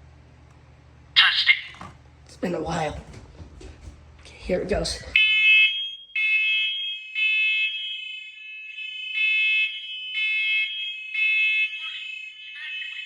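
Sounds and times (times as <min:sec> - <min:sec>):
smoke alarm beeping: 0:05.2 - 0:13.0.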